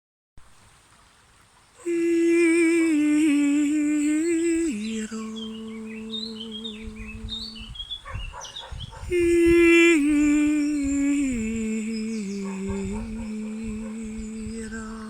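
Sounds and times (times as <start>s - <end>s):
birds chirping: 1.7s - 15.0s
person humming a held note: 1.9s - 7.7s, 9.1s - 15.0s.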